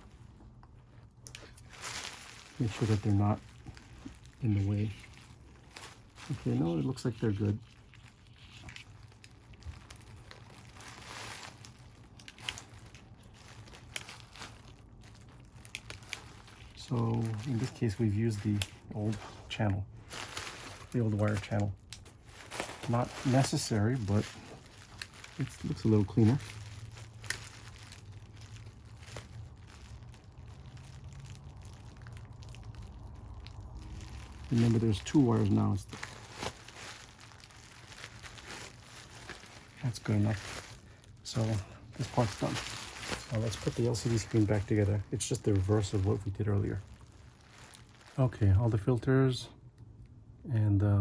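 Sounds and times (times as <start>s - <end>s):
low steady hum: 0.0s - 51.0s
plastic parts clicking and rustling: 0.6s - 33.2s, 33.8s - 48.2s
rustling and light clicks: 34.5s - 46.9s.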